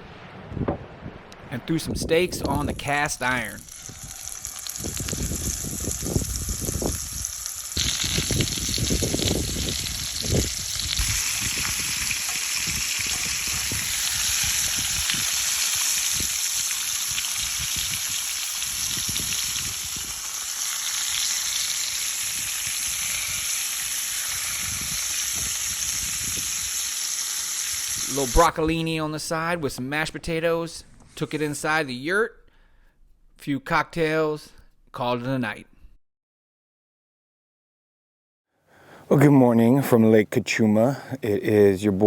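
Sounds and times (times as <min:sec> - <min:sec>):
low rumbling bumps: 0:00.0 - 0:02.8
steaks sizzling in a pan: 0:03.6 - 0:28.1.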